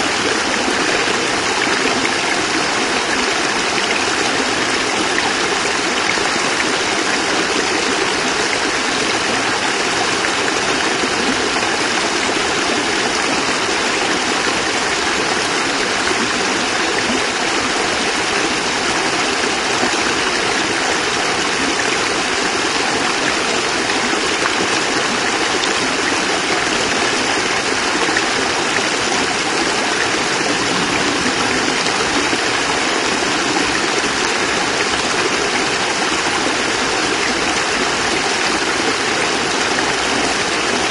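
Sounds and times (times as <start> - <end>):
water rushing over rocks: 0.0 - 40.9.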